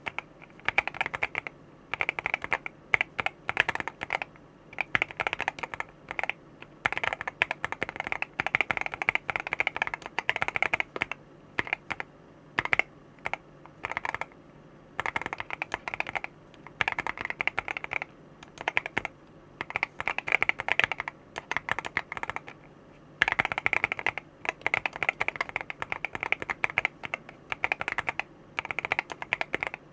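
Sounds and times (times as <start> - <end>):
mechanical keyboard typing: 0.0 - 14.4, 15.0 - 22.6, 23.2 - 29.8.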